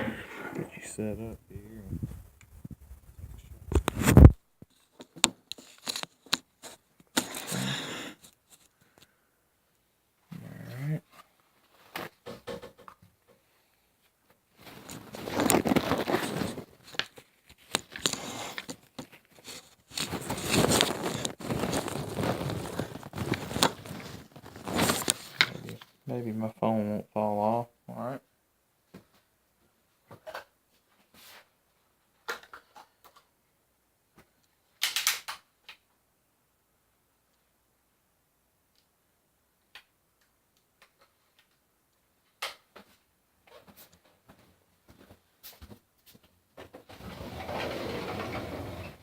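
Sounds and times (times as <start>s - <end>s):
air rifle clicking and snapping: 34.8s - 35.8s.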